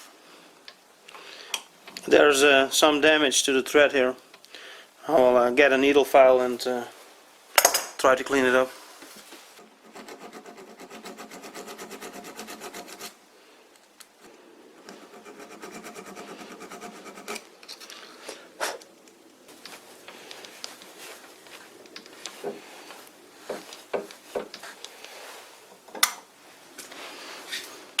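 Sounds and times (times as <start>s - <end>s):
file rasping on metal threads: 9.8s - 13.1s, 15.0s - 17.4s.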